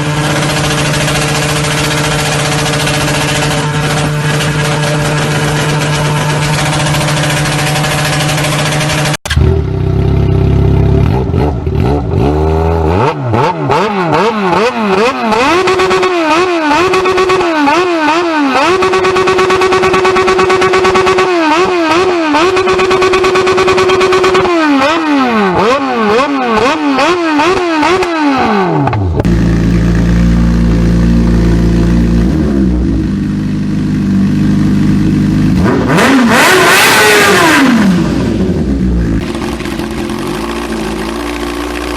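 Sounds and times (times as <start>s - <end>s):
motorcycle engine idling: 0.0s - 11.9s, 29.0s - 35.6s, 38.2s - 41.9s
motorcycle engine revving: 0.0s - 41.9s.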